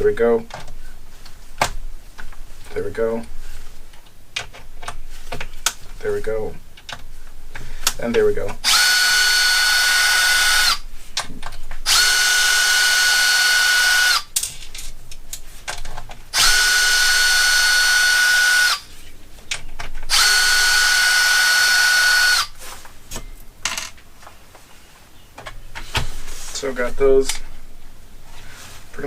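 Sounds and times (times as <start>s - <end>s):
cordless drill whine: 8.6s - 10.8s, 11.9s - 14.3s, 16.3s - 18.9s, 20.1s - 22.6s.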